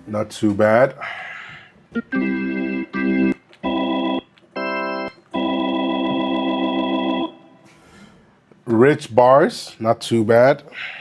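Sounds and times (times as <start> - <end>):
organ chords on synthesizer: 1.9 - 7.7.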